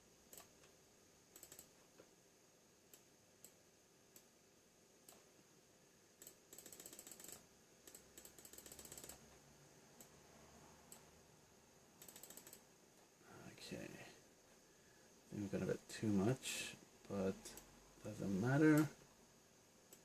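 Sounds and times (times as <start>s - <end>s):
keyboard and mouse clicking: 0.3s - 2.1s, 6.2s - 9.4s, 12.0s - 12.6s.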